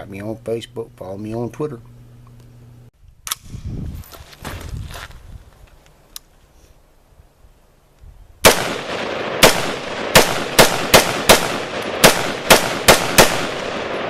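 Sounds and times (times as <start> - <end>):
loud sharp bangs: 8.4 - 14.0.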